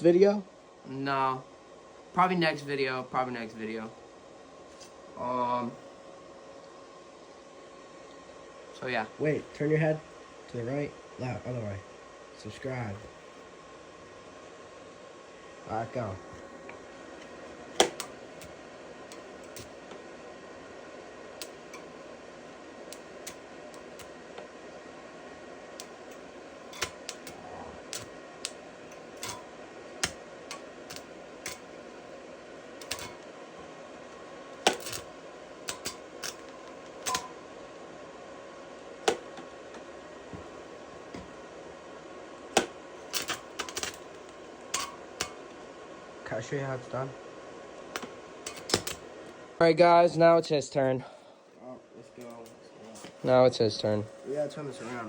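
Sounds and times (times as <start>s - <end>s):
welder humming: 0.8s - 55.0s
welding arc popping and crackling: 15.6s - 37.8s, 38.8s - 41.6s, 42.3s - 50.8s, 52.2s - 52.6s.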